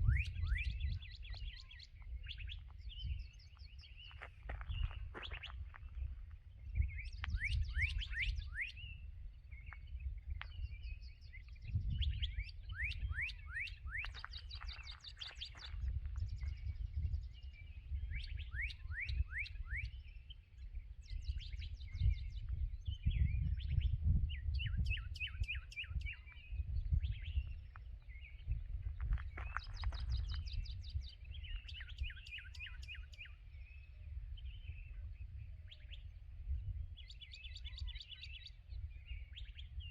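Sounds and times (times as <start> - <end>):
steady low rumble: 0.0 - 18.6
songbirds singing: 0.0 - 39.9.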